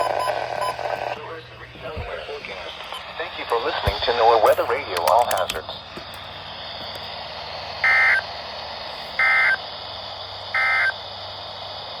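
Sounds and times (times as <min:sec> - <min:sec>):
steady radio hiss: 0:00.0 - 0:12.0
digital data bursts: 0:07.8 - 0:08.2, 0:09.2 - 0:09.6, 0:10.5 - 0:11.0.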